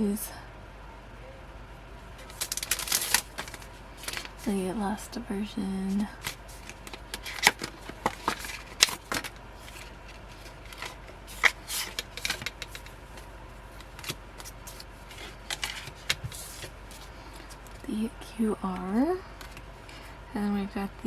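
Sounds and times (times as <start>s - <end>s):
paper and card rustling: 2.2s - 4.6s, 5.7s - 17.9s, 18.7s - 20.2s.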